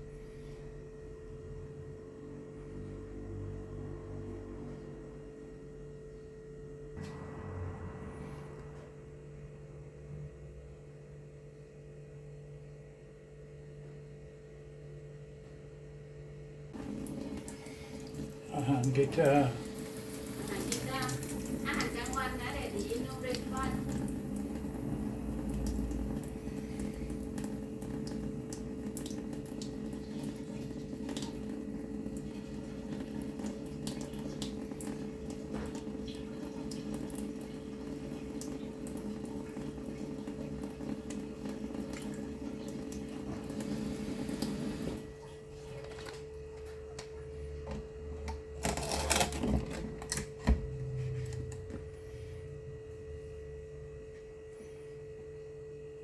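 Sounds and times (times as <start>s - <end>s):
steady hum: 0.0s - 56.0s
water running: 16.7s - 51.9s.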